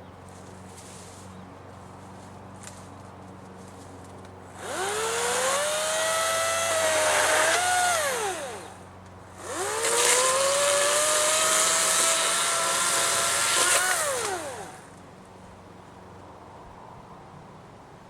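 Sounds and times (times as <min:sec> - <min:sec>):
electric chainsaw revving: 0:04.5 - 0:15.0.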